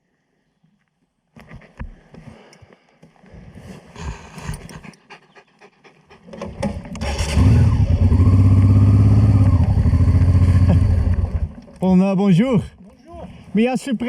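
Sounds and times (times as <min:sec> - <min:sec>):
dog panting: 0:04.0 - 0:06.9
engine running loud and steady: 0:07.0 - 0:11.5.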